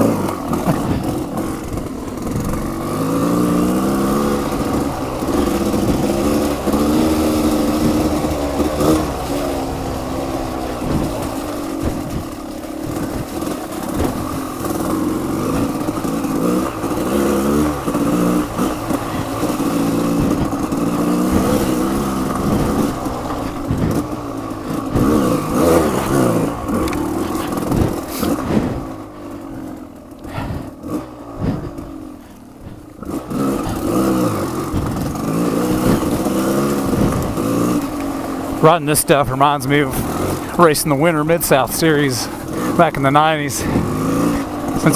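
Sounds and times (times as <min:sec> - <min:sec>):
motorcycle engine revving: 0:00.0 - 0:44.9.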